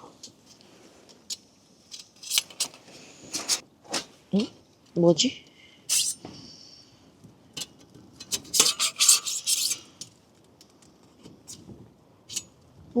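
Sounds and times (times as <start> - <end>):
metal panels clinking and scraping: 5.9 - 6.2, 7.6 - 10.2.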